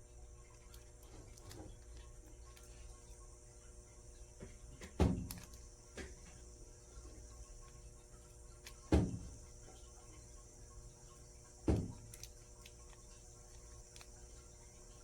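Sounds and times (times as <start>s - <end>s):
faint hum and hiss: 0.0s - 15.0s.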